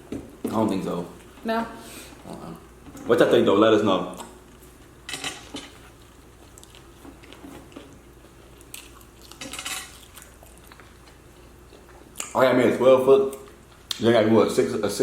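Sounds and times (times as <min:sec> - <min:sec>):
food wrapping rustling: 0:04.5 - 0:11.6.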